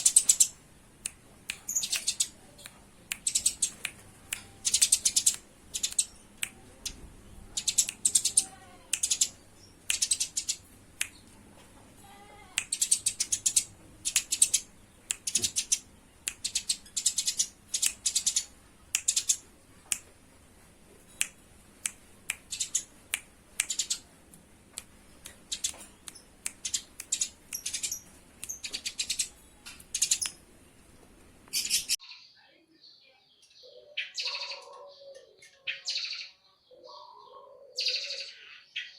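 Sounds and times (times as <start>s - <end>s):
sparrows chirping: 0.0s - 0.6s, 3.2s - 3.8s, 4.4s - 11.3s, 12.7s - 19.5s, 22.4s - 23.0s, 23.7s - 24.1s, 25.1s - 30.4s, 31.5s - 38.9s
harsh calls of sparrows fighting: 3.2s - 10.6s.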